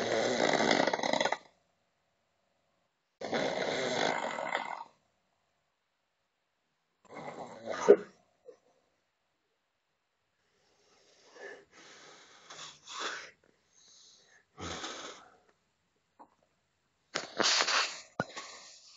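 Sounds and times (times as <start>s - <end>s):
man breathing heavily in sleep: 10.4s - 15.5s.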